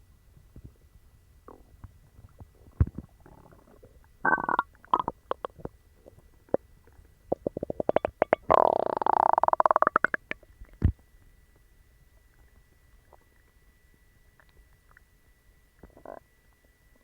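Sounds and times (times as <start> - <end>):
stomach gurgling and popping: 1.4 - 11.0, 12.2 - 13.6, 15.8 - 16.8
squeaky stomach growl: 2.7 - 6.6, 7.3 - 10.4, 15.8 - 16.3.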